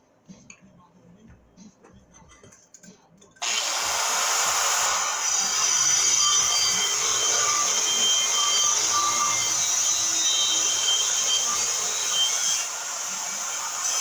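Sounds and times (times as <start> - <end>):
power cutting tool cutting metal: 3.4 - 14.0.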